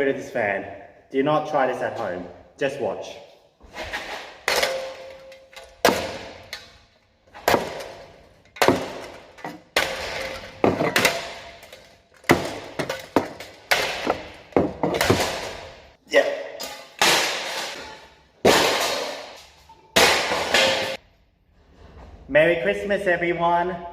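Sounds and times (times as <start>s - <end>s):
clatter of broken pieces: 7.4s - 15.7s
hard blows smashing a ceiling fan: 7.4s - 16.0s, 16.8s - 19.4s, 20.0s - 21.0s.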